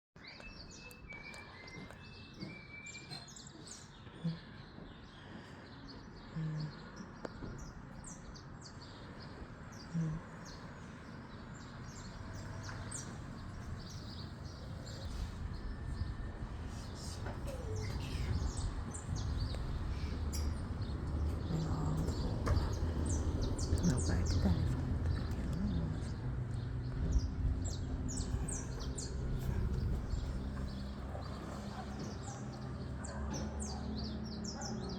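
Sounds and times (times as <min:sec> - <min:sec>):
bird chirps: 0:00.2 - 0:08.8
outdoor background noise: 0:00.2 - 0:34.9
low rumble: 0:12.4 - 0:31.8.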